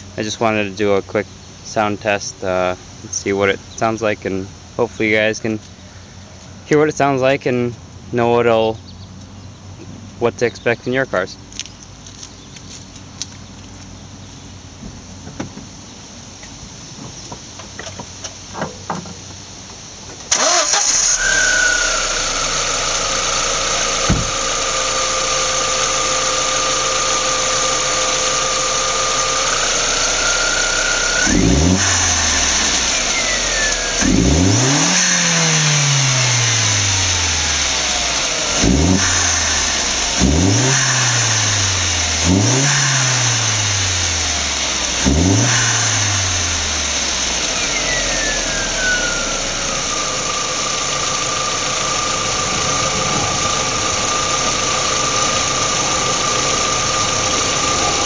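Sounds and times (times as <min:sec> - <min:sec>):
car engine starting and idling: 0:17.5 - 0:58.0
high turbo whine: 0:20.2 - 0:58.0
engine revving: 0:20.3 - 0:58.0.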